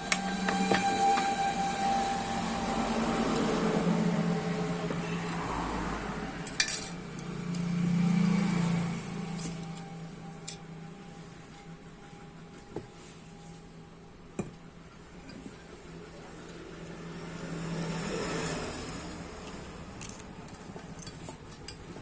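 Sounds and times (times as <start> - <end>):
low hum: 0.0 - 14.2
metal parts clinking: 6.4 - 7.0.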